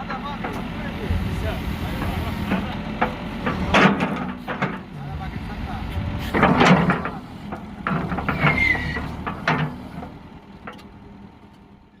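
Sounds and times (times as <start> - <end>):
diesel engine running: 0.0 - 12.0
falling squeal: 8.2 - 9.2.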